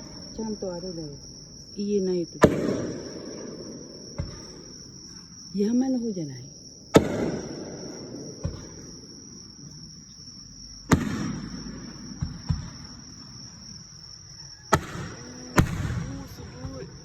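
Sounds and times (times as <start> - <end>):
distant fireworks bangs: 0.0 - 5.7, 6.8 - 9.5, 10.8 - 13.9, 14.7 - 17.0
crickets chirping: 0.0 - 17.0
small firework pops: 2.4 - 3.5, 6.9 - 7.8, 10.9 - 12.8, 14.7 - 17.0.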